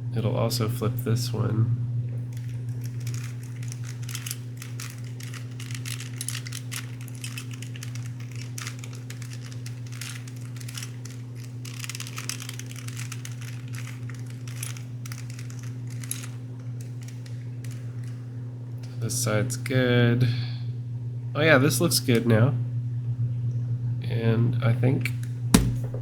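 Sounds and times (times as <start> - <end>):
steady low hum: 0.0 - 26.0
puzzle cube plastic clicks: 2.4 - 18.2.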